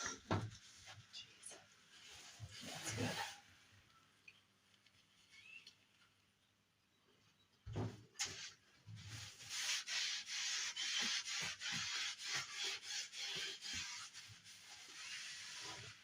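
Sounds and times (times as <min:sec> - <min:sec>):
sandpaper rubbing: 0:09.1 - 0:16.0.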